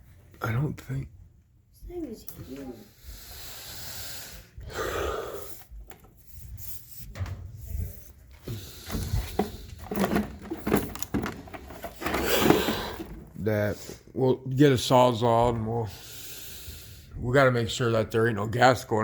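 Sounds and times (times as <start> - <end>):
objects knocking and rubbing: 6.0 - 13.5.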